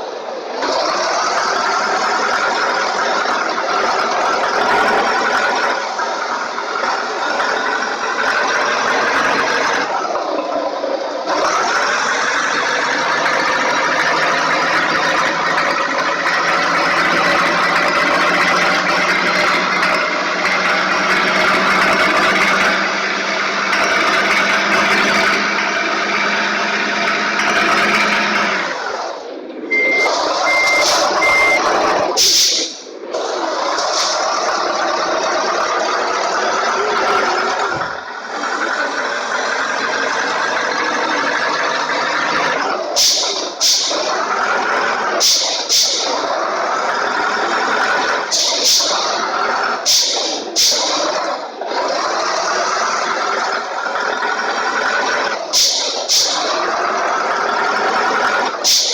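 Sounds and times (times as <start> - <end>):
heavy vehicle engine running: 0.0 - 58.9
reversing beeps: 29.7 - 32.0.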